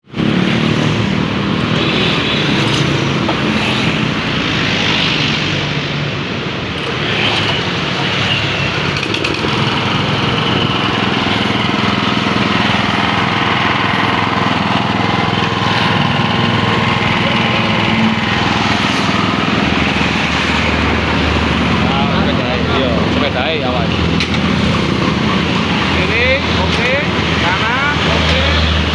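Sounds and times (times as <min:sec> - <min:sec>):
walking tractor engine running: 0:08.7 - 0:28.9.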